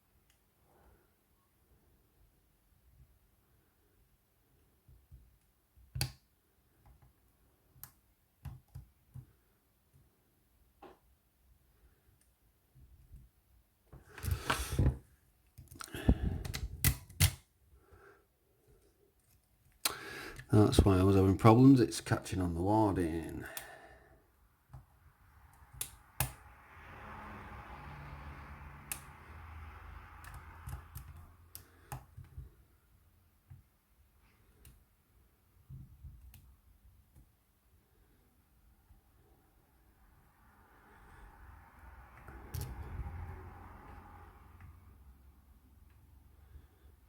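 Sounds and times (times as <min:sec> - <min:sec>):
lock pick clicking: 0:16.4 - 0:17.4.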